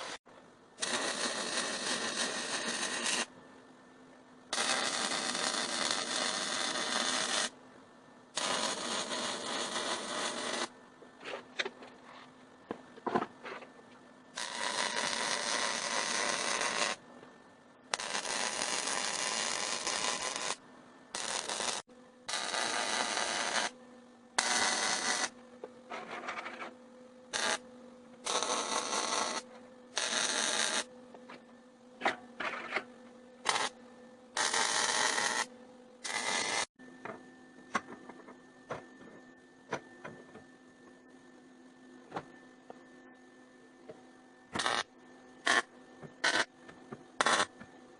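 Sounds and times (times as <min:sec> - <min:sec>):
steady low hum: 0:00.0 - 0:47.9
welding arc bursts: 0:00.8 - 0:03.3, 0:04.5 - 0:07.5, 0:08.4 - 0:10.7, 0:14.4 - 0:17.0, 0:17.9 - 0:20.6, 0:21.2 - 0:23.7, 0:24.4 - 0:25.3, 0:27.3 - 0:27.6, 0:28.2 - 0:29.4, 0:30.0 - 0:30.9, 0:33.4 - 0:33.7, 0:34.4 - 0:36.7, 0:44.6 - 0:46.5, 0:47.2 - 0:47.5.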